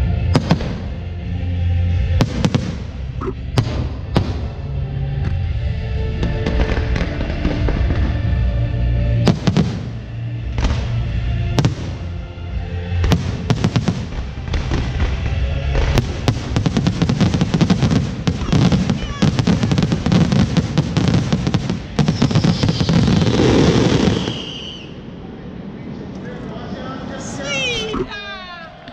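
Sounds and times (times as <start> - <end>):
music playing: 0.0 - 24.1
crackling firework bangs: 0.4 - 0.9, 2.2 - 3.0, 6.2 - 8.3, 9.2 - 10.0, 10.6 - 11.0, 11.6 - 12.1, 13.0 - 24.9
firework bangs: 0.4 - 0.9, 2.2 - 4.6, 9.2 - 12.1, 13.0 - 25.0.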